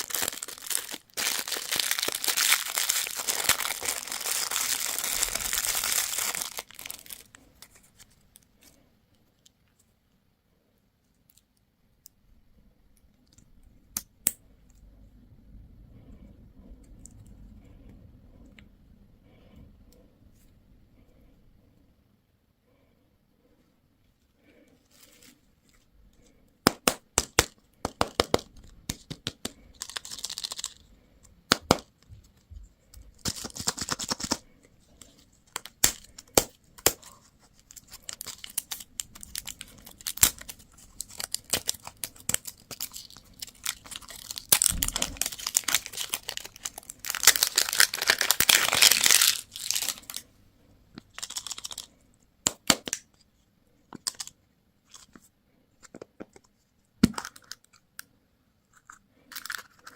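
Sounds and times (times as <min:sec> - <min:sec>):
wrappers tearing and crinkling: 0:00.0 - 0:07.4, 0:29.7 - 0:30.8, 0:35.5 - 0:50.2, 0:51.1 - 0:51.9.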